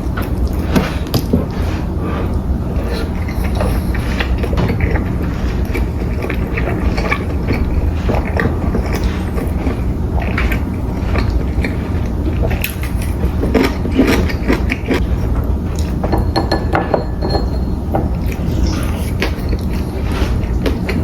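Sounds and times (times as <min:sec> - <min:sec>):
steady low hum: 0:00.0 - 0:21.0
crisp chewing: 0:00.2 - 0:15.0.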